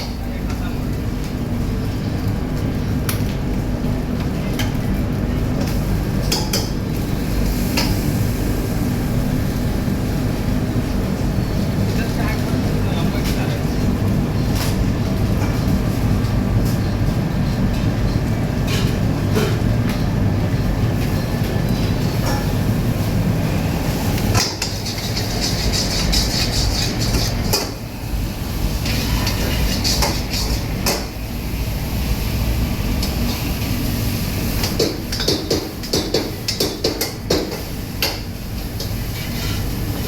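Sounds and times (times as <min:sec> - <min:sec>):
gas burner roaring: 0:00.0 - 0:40.0
metal clanking on wok: 0:24.3 - 0:27.8, 0:28.8 - 0:31.2.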